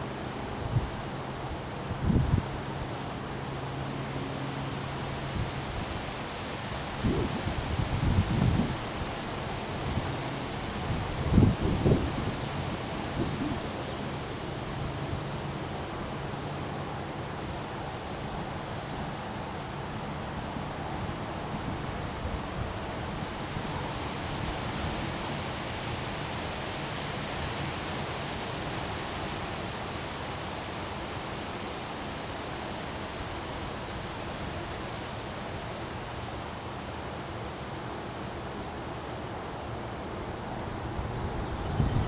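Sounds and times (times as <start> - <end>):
wind and rain through trees: 0.0 - 42.0
wind buffeting microphone: 7.0 - 14.2, 40.2 - 42.0.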